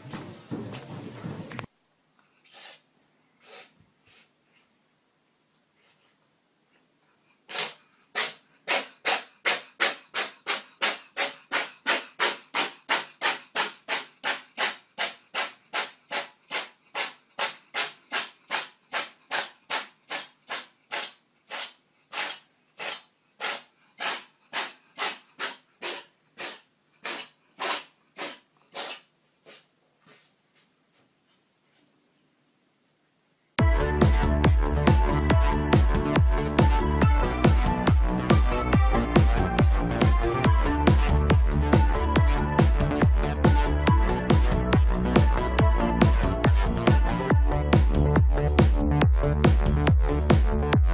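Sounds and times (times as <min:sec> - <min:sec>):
cat sneezing: 0:02.5 - 0:02.8, 0:03.4 - 0:04.2, 0:07.5 - 0:30.2.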